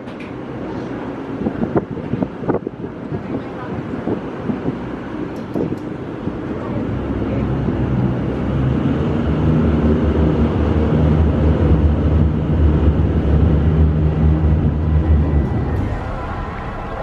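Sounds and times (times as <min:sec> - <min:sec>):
vehicle engine humming: 0:04.9 - 0:17.0.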